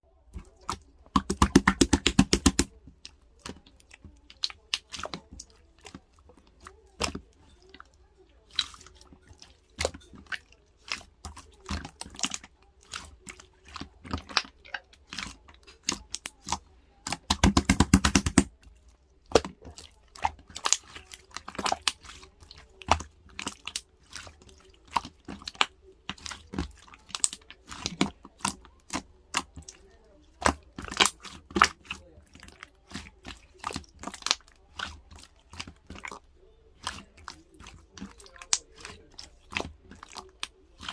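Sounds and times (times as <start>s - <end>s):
slime clicking and popping: 0.4s - 6.0s, 9.8s - 18.6s, 19.3s - 29.8s, 30.4s - 36.2s.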